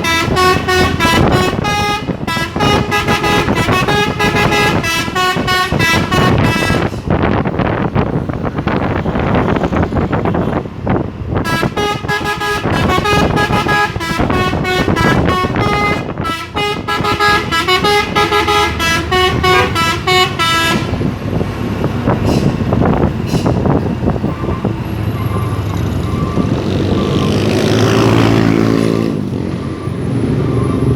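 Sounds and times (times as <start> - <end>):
truck horn playing a tune: 0.0 - 7.2, 11.4 - 21.1
truck on the road: 0.0 - 30.9.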